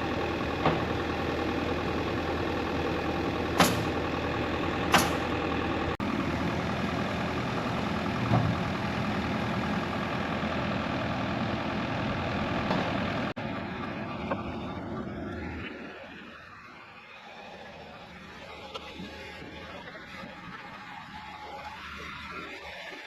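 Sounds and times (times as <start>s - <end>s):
diesel engine running: 0.0s - 23.0s
sharp knocks: 3.6s - 4.0s, 4.9s - 5.3s.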